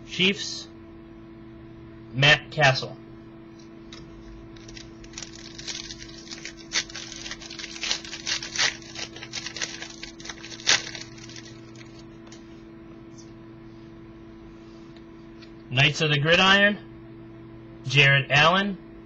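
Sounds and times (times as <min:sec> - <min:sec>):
steady electrical hum: 0:00.0 - 0:19.0
trading cards rustling and clicking: 0:03.9 - 0:12.5.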